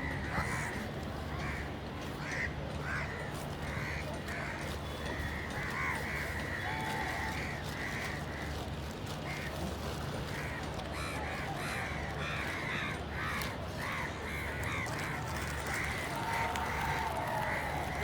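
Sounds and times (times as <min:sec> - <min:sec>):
crows cawing: 0:00.0 - 0:00.8, 0:05.4 - 0:08.5, 0:10.4 - 0:18.0.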